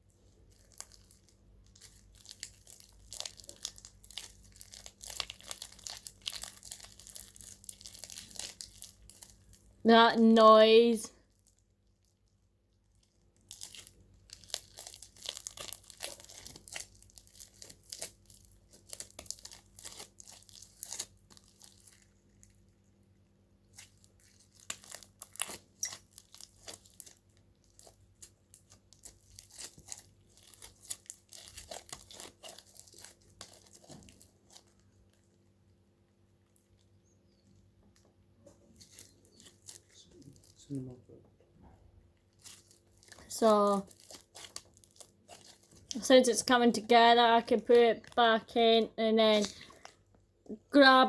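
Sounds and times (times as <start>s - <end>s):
slime squeezed and stretched: 0.4s - 9.6s, 11.3s - 22.7s, 23.7s - 34.9s, 42.3s - 46.0s.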